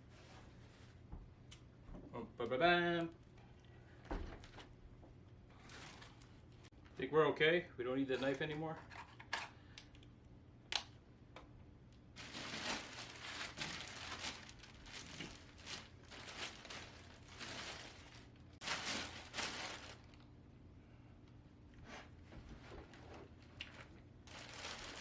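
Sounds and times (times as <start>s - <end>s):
packing material rustling: 5.6s - 6.7s, 12.2s - 20.2s, 23.6s - 25.0s.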